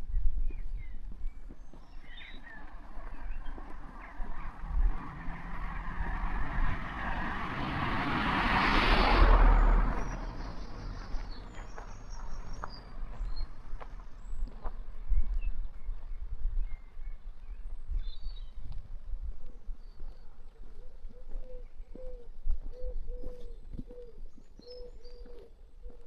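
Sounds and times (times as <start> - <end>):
car driving past: 1.8 - 14.7.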